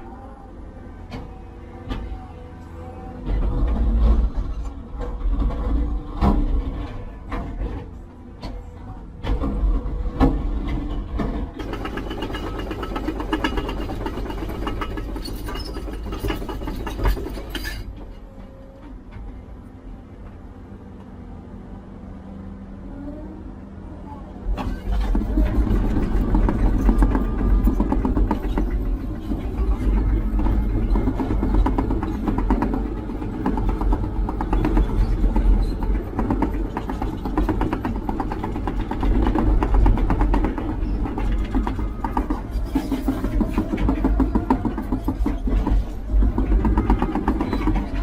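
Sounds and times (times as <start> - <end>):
heavy machine engine running: 0.0 - 48.0
rapid irregular clanking: 9.2 - 18.1, 24.6 - 48.0
rapid metallic clattering: 11.6 - 17.9.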